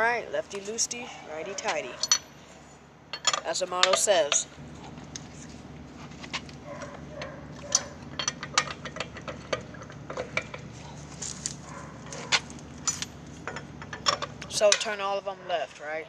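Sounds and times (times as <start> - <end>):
steady low hum: 0.0 - 16.0
lug wrench metal clinks: 2.0 - 2.3, 3.1 - 4.4, 7.2 - 10.6, 12.8 - 14.8.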